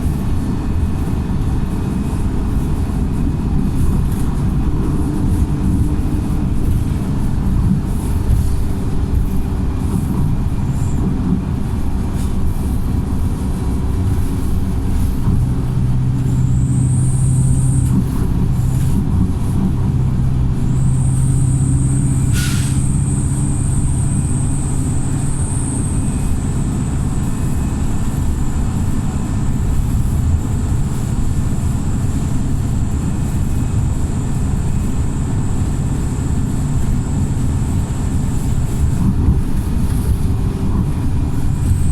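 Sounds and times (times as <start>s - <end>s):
bus diesel engine under load: 0.0s - 41.9s
sharp hiss of air: 22.3s - 23.0s.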